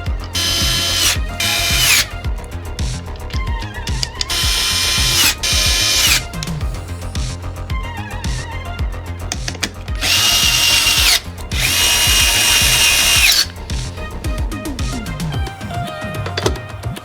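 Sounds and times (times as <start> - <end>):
electric screwdriver whining: 0.0 - 7.3, 9.3 - 14.5.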